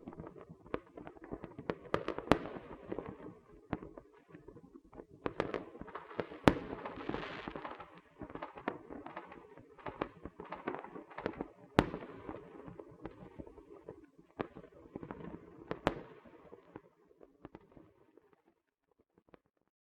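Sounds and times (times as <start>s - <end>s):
firecrackers cracking and popping: 4.9s - 13.6s.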